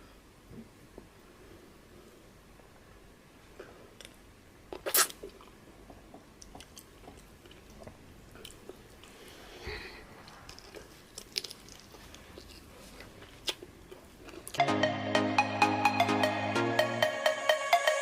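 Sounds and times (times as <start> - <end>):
person chewing: 4.0 - 9.5, 10.2 - 14.6
wet mouth smacks: 4.8 - 5.3.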